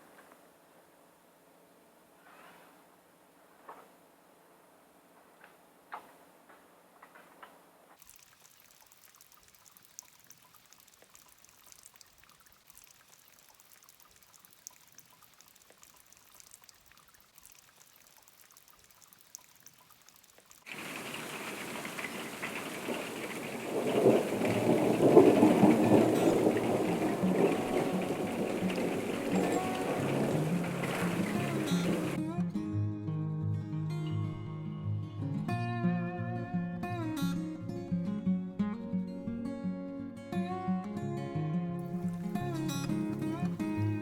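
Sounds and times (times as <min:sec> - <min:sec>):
faint ticks: 0:07.1 - 0:32.2
heavy rain pouring: 0:20.6 - 0:32.2.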